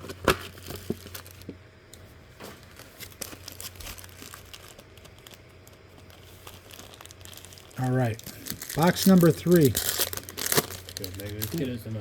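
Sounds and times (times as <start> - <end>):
cardboard and wrapping tearing: 2.6 - 11.9.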